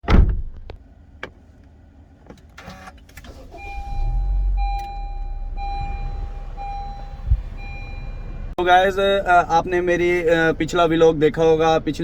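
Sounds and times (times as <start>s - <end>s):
low rumble: 3.8s - 10.7s.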